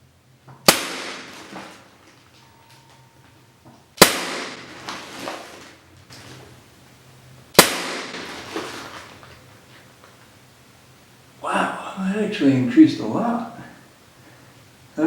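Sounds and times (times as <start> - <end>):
pellet gun shots: 0.6 - 1.8, 4.0 - 5.6, 7.5 - 8.5.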